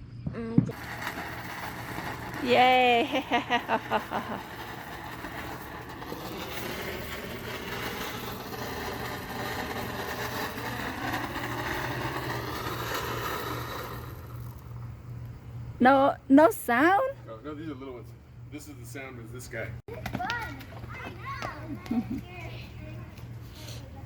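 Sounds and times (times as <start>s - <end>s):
ground firework hissing: 0.6s - 15.6s.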